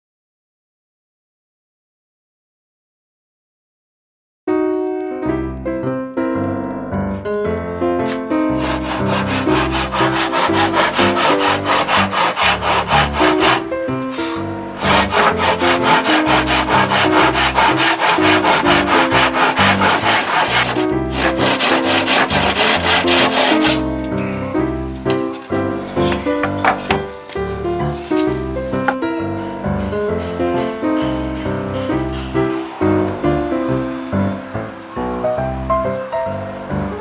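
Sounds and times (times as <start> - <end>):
piano music: 4.5 - 37.0
handsaw cutting wood: 8.1 - 24.0, 25.1 - 27.2, 30.2 - 33.3.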